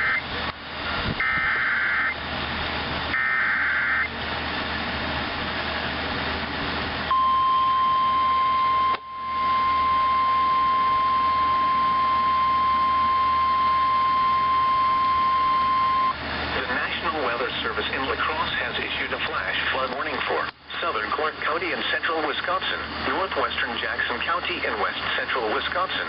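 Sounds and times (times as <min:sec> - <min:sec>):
radio hiss: 0:00.0 - 0:00.2, 0:00.8 - 0:02.2, 0:10.1 - 0:26.0
steady warning alarm tone: 0:00.0 - 0:00.2, 0:01.2 - 0:02.2, 0:03.1 - 0:04.1, 0:07.1 - 0:16.2.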